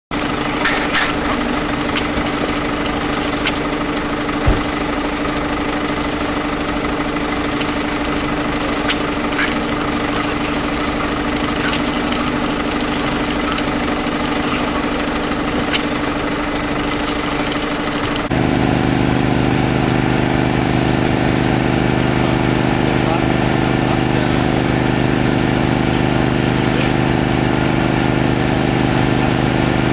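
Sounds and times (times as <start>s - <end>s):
deep engine hum: 0.1s - 29.9s
engine idling: 0.1s - 29.9s
short thump: 4.4s - 4.7s.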